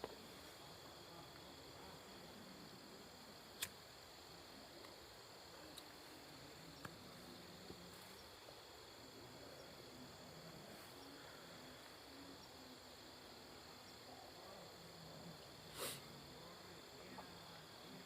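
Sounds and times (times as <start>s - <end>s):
crickets trilling: 0.0s - 18.0s
short sharp hiss: 15.7s - 16.1s.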